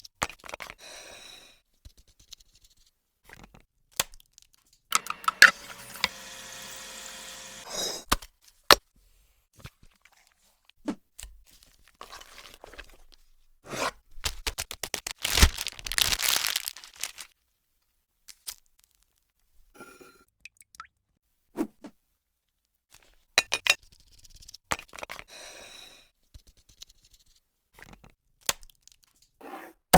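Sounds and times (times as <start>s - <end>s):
pitched scraping or tearing: 14.4s - 17.3s.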